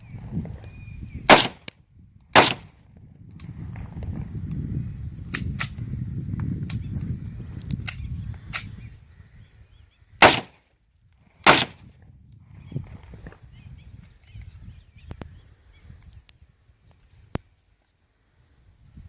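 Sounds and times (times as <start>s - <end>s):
pistol shots: 1.3s - 1.7s, 2.4s - 2.7s, 10.2s - 10.6s, 11.4s - 11.8s.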